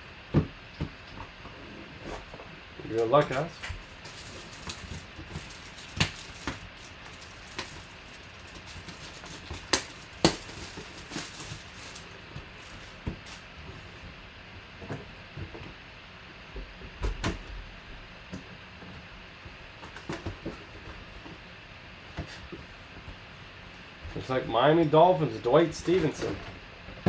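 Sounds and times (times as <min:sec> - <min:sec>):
cardboard box being handled: 0:04.0 - 0:14.0.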